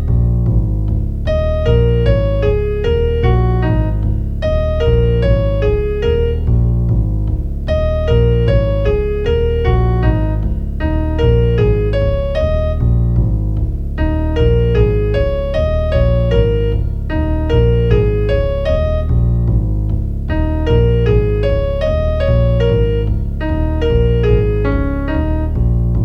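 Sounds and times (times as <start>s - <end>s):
piano melody: 0.0s - 26.0s.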